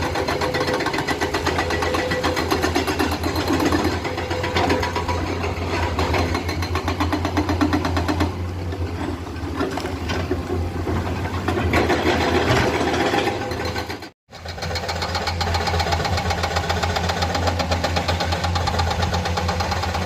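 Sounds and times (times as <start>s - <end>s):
excavator diesel engine clatter: 0.0s - 20.0s.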